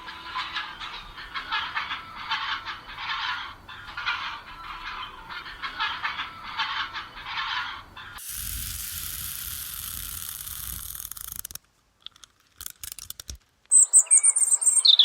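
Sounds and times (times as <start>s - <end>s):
chicks peeping: 13.7s - 15.0s.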